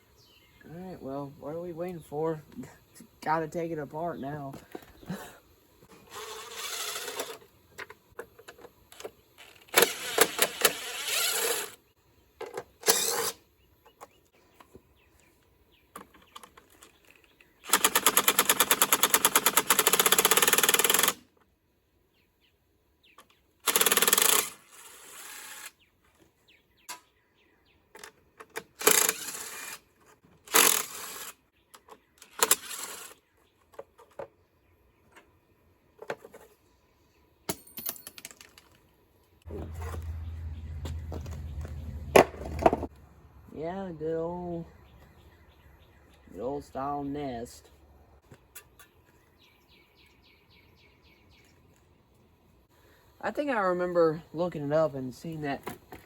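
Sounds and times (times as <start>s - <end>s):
clatter of metal parts: 37.5s - 38.8s.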